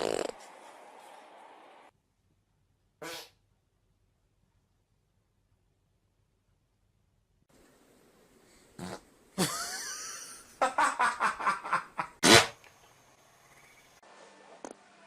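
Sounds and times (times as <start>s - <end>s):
farts: 0.0s - 0.4s, 3.0s - 3.4s, 8.8s - 9.0s, 12.2s - 12.6s.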